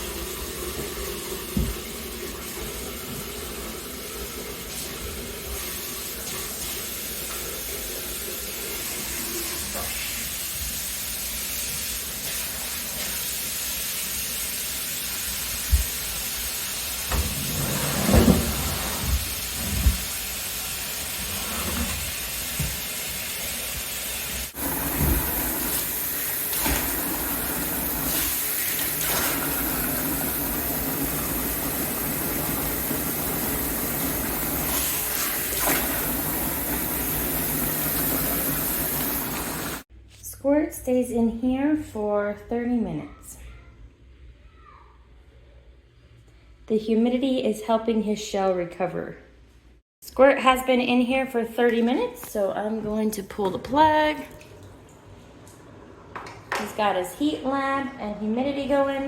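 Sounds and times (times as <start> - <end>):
tap water running into bathtub: 0.0 - 39.9, 51.6 - 56.8.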